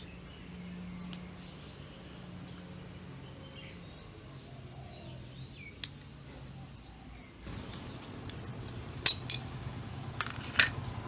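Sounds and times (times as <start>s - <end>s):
birds chirping: 0.0s - 11.0s
steady low hum: 0.0s - 11.0s
handling noise: 7.5s - 11.0s.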